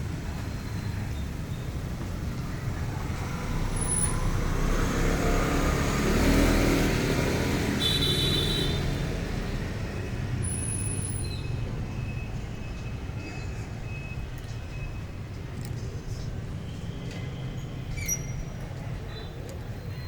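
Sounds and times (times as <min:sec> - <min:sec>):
traffic rumble: 0:00.0 - 0:20.0
vehicle passing by: 0:02.7 - 0:07.8.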